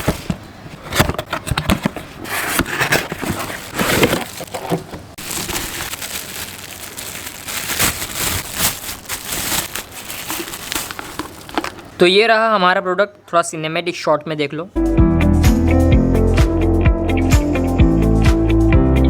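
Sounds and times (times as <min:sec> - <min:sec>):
cardboard box being opened: 0:00.0 - 0:11.9
packaging crinkling: 0:02.3 - 0:12.0.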